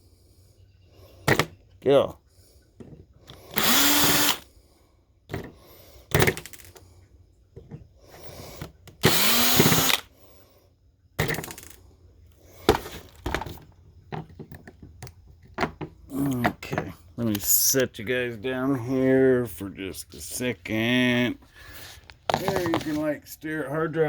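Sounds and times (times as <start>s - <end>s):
power drill whining: 3.2s - 4.5s, 8.0s - 10.2s
small metal parts clicking: 6.2s - 6.9s.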